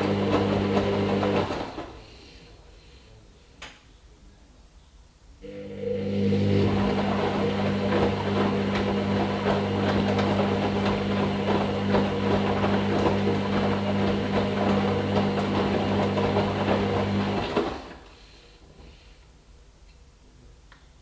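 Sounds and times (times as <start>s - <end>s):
washing machine running: 0.0s - 2.1s, 5.4s - 18.2s.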